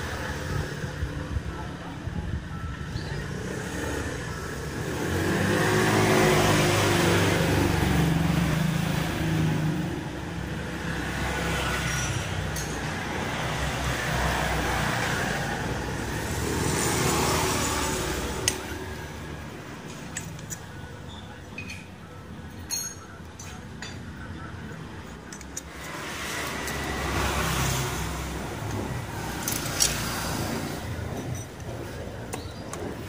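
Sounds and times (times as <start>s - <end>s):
scooter engine revving: 3.3s - 10.1s, 13.4s - 19.5s.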